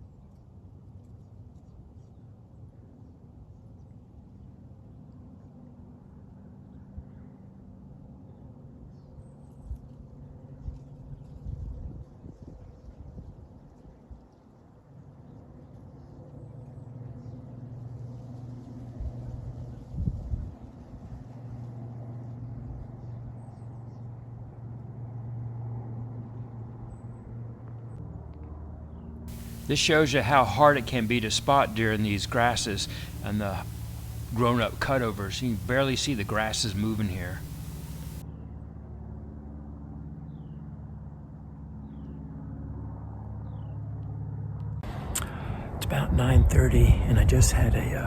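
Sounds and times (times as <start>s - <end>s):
distant vehicle engine rumble: 29.3s - 38.2s
faint background noise: 29.3s - 38.2s
faint bird chirps: 29.3s - 38.2s
steady low hum: 29.3s - 38.2s.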